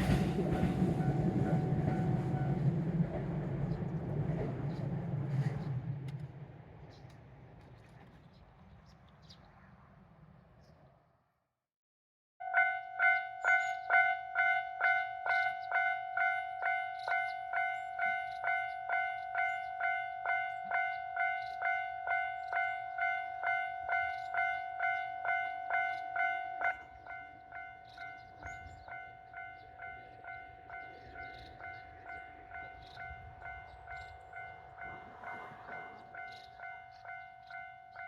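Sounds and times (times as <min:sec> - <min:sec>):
railroad crossing bell ringing: 0:00.0 - 0:02.9, 0:12.4 - 0:38.0.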